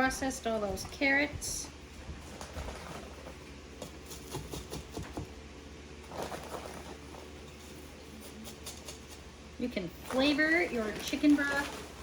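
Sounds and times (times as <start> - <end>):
carrot peels rustling: 6.0 - 12.0.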